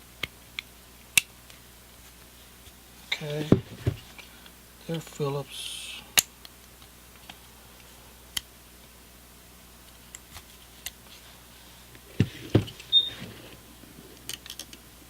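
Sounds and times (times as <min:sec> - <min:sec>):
thumps: 0:03.3 - 0:04.1, 0:12.1 - 0:13.4.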